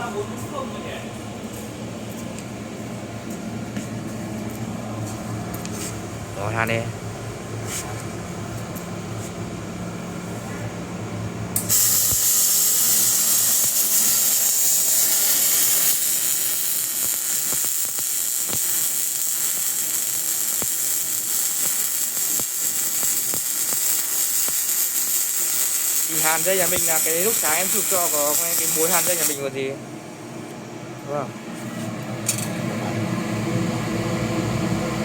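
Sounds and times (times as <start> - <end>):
welder humming: 11.5 - 29.8
welding arc hissing and crackling: 11.6 - 29.5.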